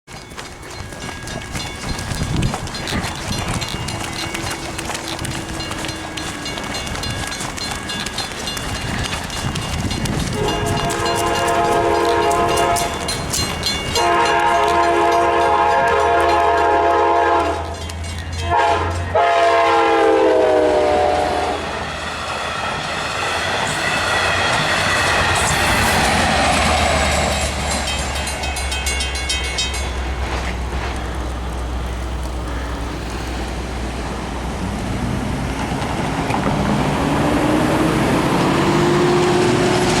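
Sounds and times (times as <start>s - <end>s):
train wheels clicking over rail joints: 0.1s - 19.9s, 20.5s - 40.0s
crossing bells ringing: 0.1s - 34.4s
train horn chord: 10.3s - 13.2s, 13.9s - 21.8s.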